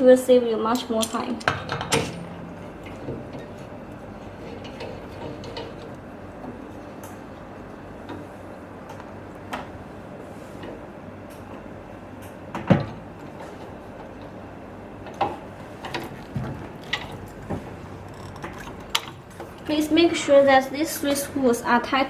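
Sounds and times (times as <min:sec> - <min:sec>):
steady background noise: 0:00.0 - 0:22.0
equipment knocks and clicks: 0:01.2 - 0:06.6.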